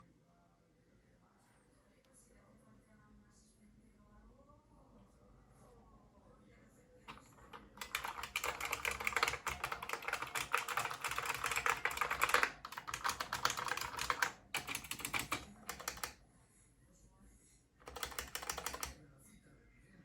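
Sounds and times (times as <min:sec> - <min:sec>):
clicky keyboard typing: 0:07.1 - 0:16.2, 0:17.8 - 0:19.0.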